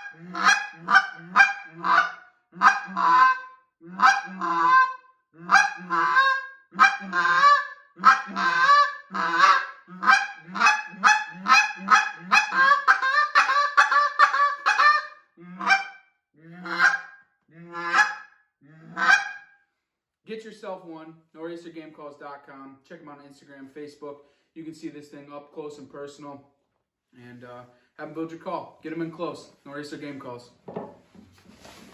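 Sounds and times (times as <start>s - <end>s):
goose call clucks: 0.0s - 18.2s, 18.8s - 19.4s
goose call honks: 0.0s - 18.2s, 18.8s - 19.4s.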